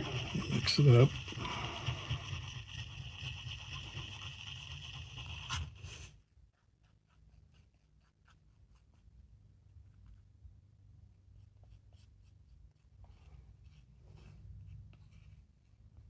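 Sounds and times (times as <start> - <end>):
stick scraping epoxy: 0.0 - 6.0.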